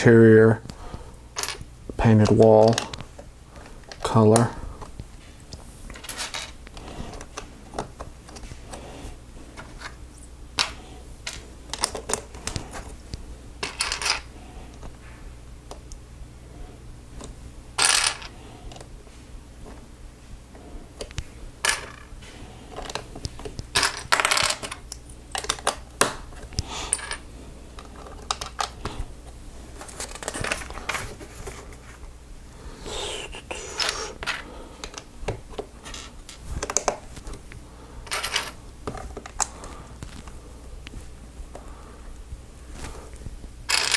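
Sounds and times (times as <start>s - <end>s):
plastic pieces clicking and rattling: 5.9s - 8.4s, 10.6s - 12.8s, 13.6s - 14.3s, 17.8s - 18.8s, 22.8s - 26.1s, 27.8s - 28.8s, 43.7s - 43.9s.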